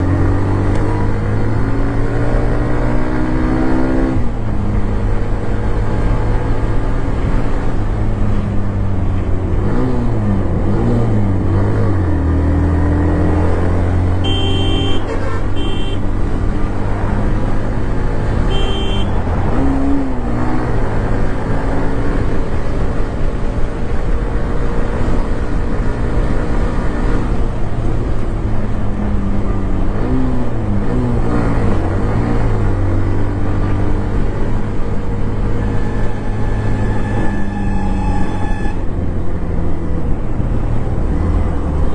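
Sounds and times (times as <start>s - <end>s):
short high beeps: 14.2s - 16.0s.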